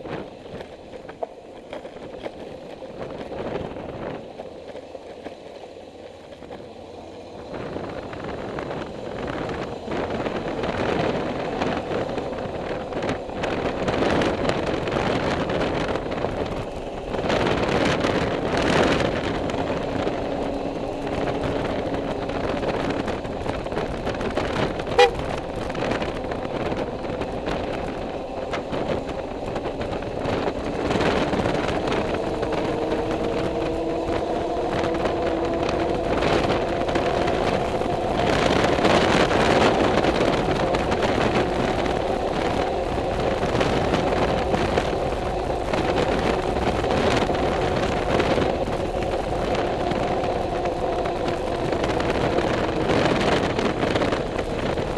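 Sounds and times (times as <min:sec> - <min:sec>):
vehicle engine running: 0:00.0 - 0:54.9
wind and road noise: 0:00.0 - 0:54.9
car horn toot: 0:24.8 - 0:25.4.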